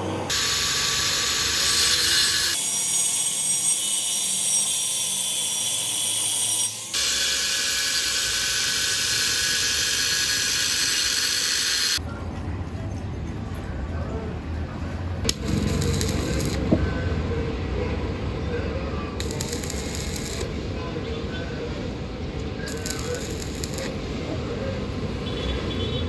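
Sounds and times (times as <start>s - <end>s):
arc welding crackling hiss: 0.3s - 2.6s, 6.2s - 12.0s, 15.3s - 16.6s, 19.2s - 20.5s, 22.7s - 24.0s.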